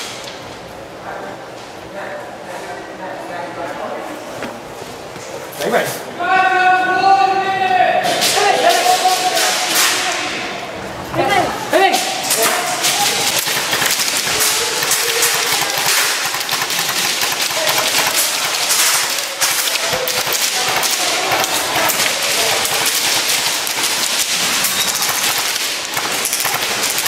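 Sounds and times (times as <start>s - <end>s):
pellets rattling against walls: 11.8s - 27.0s
airsoft guns firing: 11.9s - 27.0s.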